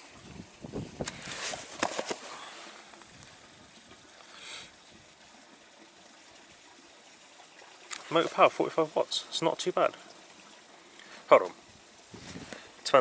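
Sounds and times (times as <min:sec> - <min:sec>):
pump handling knocks and scrapes: 0:01.0 - 0:02.4.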